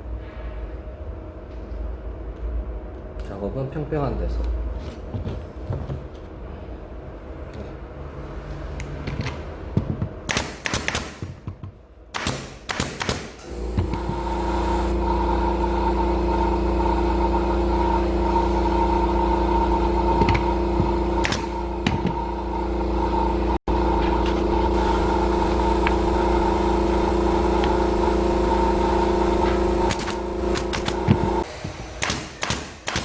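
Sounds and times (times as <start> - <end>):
machine motor running steadily: 13.4 - 33.0.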